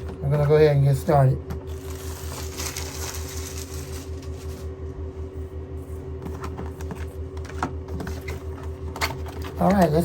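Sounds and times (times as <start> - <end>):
pulsing mechanical hum: 0.0 - 10.0
packaging rustling: 1.7 - 4.8.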